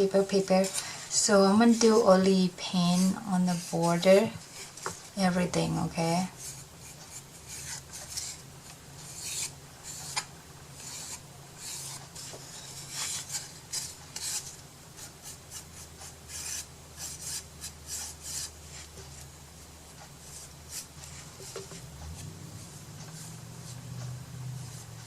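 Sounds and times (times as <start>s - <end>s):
scratchy paintbrush strokes on wood: 24.6s - 25.0s.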